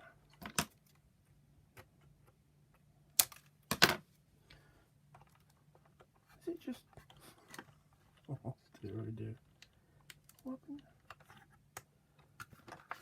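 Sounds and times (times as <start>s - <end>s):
plastic clicks and snaps: 3.1s - 3.9s.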